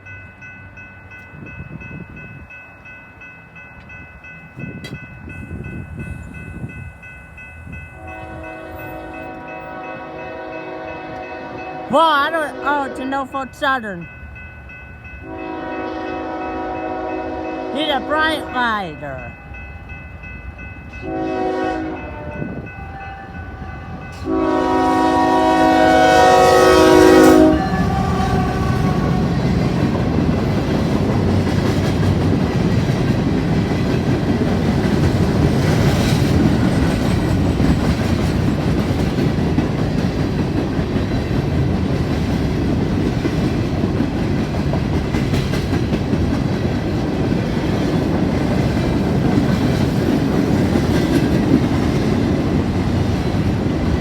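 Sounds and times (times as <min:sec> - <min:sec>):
rail cars rumbling: 0:00.0 - 0:54.0
locomotive air horn: 0:08.0 - 0:13.0, 0:15.2 - 0:18.5, 0:21.0 - 0:29.4.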